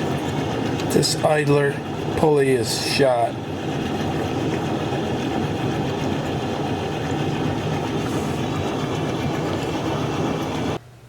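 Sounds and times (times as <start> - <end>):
low mechanical drone: 0.0 - 10.8.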